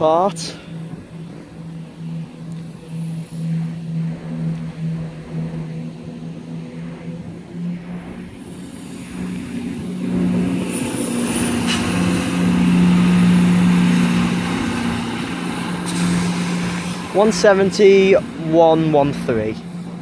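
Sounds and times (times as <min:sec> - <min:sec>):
diesel train engine drone: 0:00.0 - 0:20.0.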